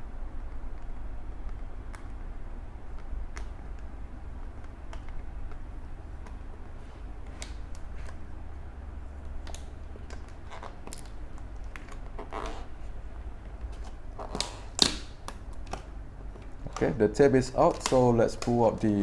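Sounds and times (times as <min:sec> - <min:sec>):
steady low hum: 0:00.0 - 0:19.0
tape peeling off cardboard: 0:02.8 - 0:08.4, 0:09.2 - 0:18.6.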